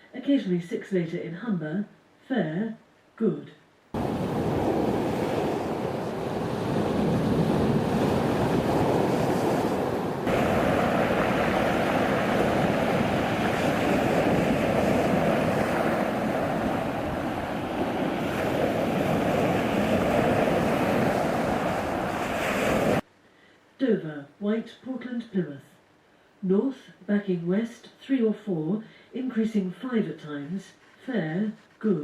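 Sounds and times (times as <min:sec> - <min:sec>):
wind: 0:03.7 - 0:23.8
waves and surf rushing: 0:04.0 - 0:23.0.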